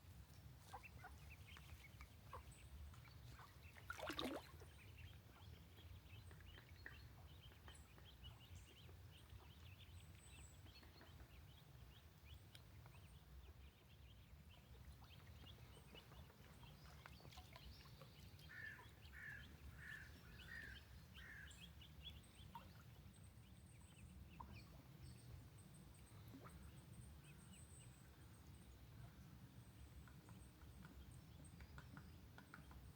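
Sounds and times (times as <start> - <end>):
ducklings peeping: 0.6 - 25.4.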